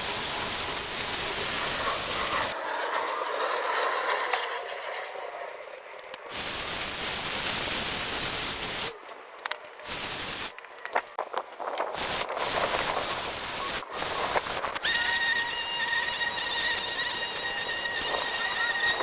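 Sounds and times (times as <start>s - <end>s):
battery lawn tool running: 12.0s - 19.0s.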